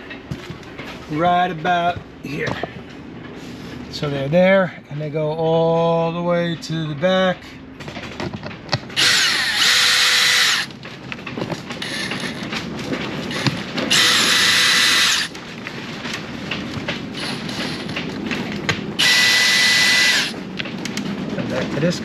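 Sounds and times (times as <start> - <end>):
power drill backing out screws: 9.0 - 10.7, 13.3 - 15.3, 19.0 - 20.4.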